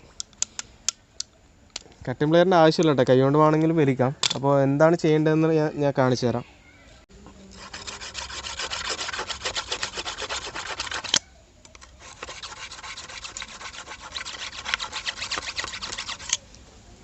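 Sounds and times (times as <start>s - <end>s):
rapid rasping scraping strokes: 7.5s - 11.2s, 11.8s - 16.4s.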